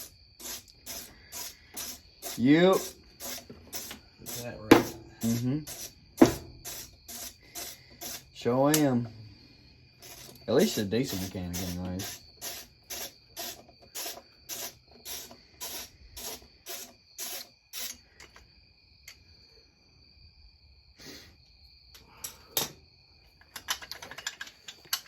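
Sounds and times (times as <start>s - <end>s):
ratchet wrench rasping: 0.0s - 8.9s, 10.0s - 18.0s
metal scrapes: 0.0s - 9.0s, 10.0s - 18.0s.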